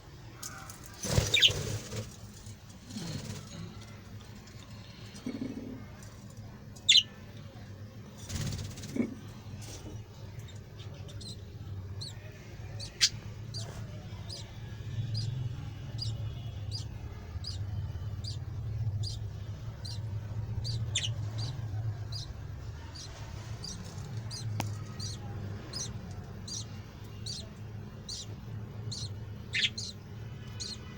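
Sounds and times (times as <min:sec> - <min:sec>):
steady low hum: 0:00.8 - 0:30.9
parrots chirping: 0:11.1 - 0:30.9.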